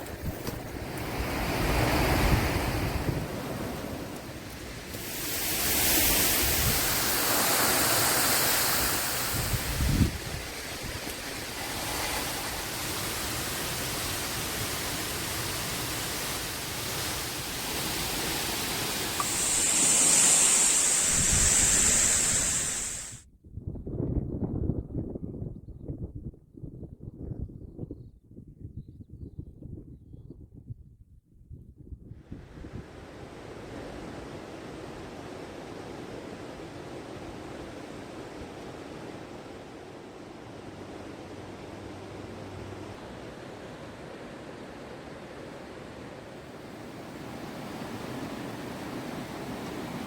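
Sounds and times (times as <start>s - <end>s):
steady high hiss: 4.2s - 23.2s, 46.4s - 50.0s
rushing waterfall: 4.8s - 23.2s, 40.0s - 50.0s
wind buffeting microphone: 8.5s - 33.2s.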